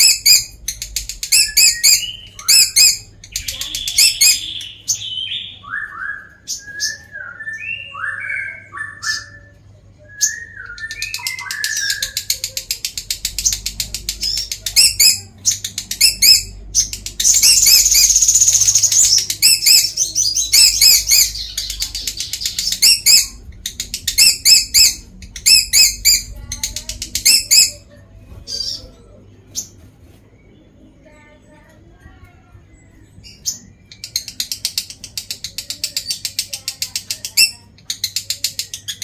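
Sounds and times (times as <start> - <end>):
lovebird rapid chatter: 10.9 - 27.8.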